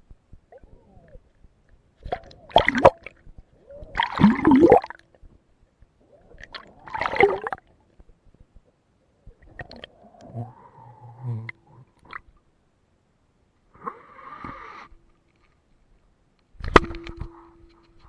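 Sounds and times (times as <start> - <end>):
water gurgling and splashing: 2.0 - 5.0, 6.2 - 7.6.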